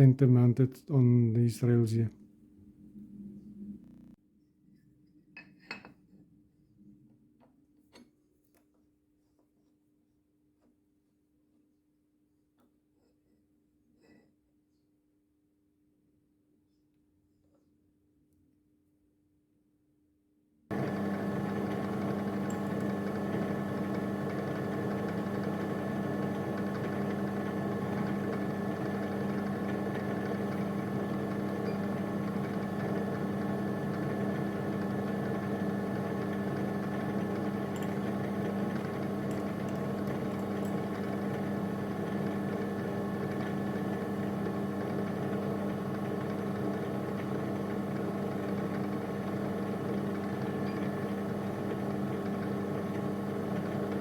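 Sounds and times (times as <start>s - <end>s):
milling machine humming: 20.7s - 54.0s.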